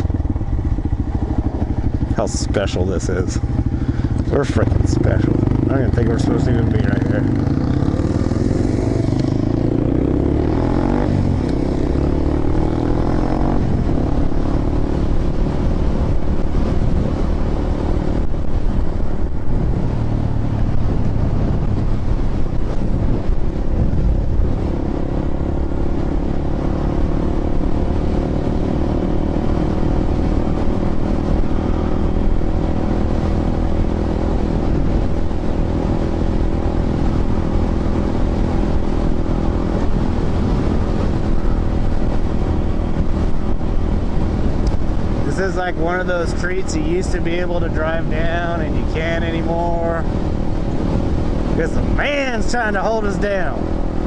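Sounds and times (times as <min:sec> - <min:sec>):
motorcycle engine cruising: 0:00.0 - 0:54.0.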